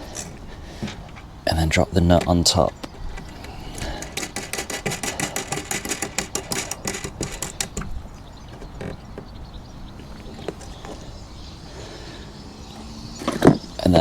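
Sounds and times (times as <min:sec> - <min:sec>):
nut spinning onto bolt clicking: 0:02.2 - 0:08.0.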